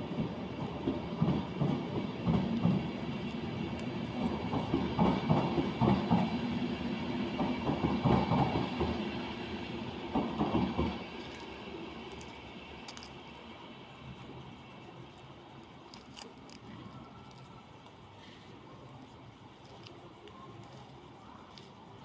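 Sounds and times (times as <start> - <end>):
train wheels knocking over rail joints: 7.3 - 13.1.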